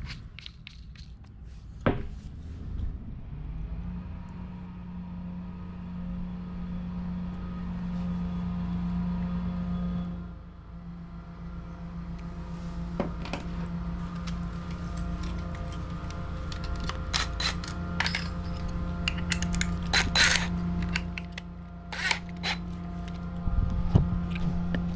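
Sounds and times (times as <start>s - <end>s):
power drill with hole saw cutting: 19.3s - 21.3s, 21.9s - 22.8s.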